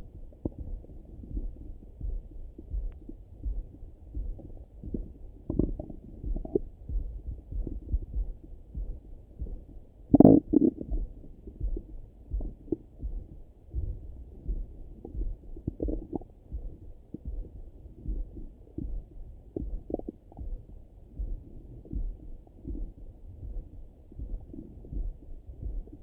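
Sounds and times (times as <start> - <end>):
low regular thudding: 0.0 - 26.0
stomach gurgling: 5.0 - 6.7, 10.1 - 11.2, 15.0 - 16.3, 19.6 - 20.6.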